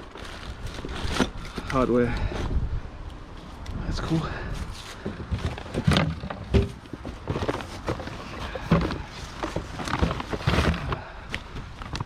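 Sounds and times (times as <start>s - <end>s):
junk knocking and clattering: 5.0s - 11.1s.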